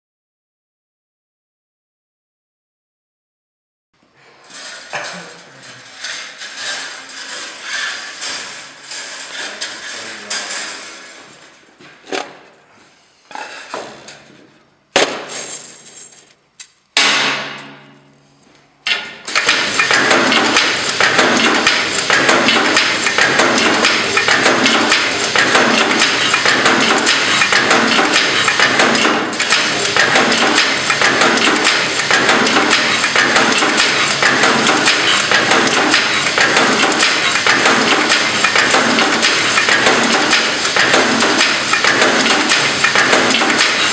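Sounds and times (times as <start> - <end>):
welding machine clanking: 4.4 - 12.4, 18.8 - 43.9.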